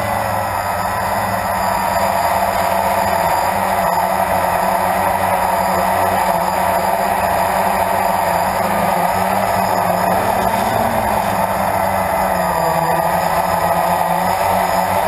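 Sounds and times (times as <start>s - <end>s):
quadcopter propellers buzzing: 0.0s - 15.0s.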